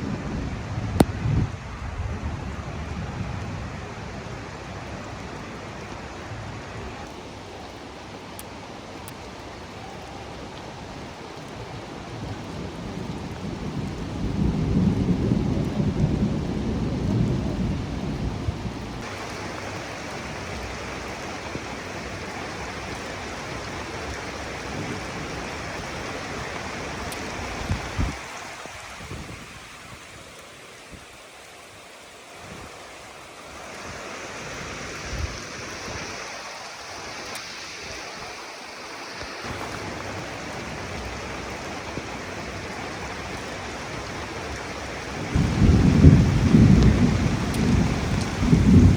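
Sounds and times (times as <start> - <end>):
heavy rain: 0.0 - 48.9
thunder rumble: 12.1 - 22.7, 39.5 - 48.9.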